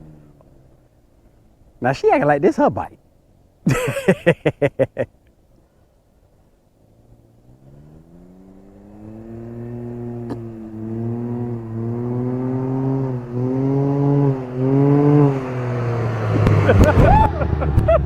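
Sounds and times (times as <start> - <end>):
trike engine under throttle: 6.9 - 18.0.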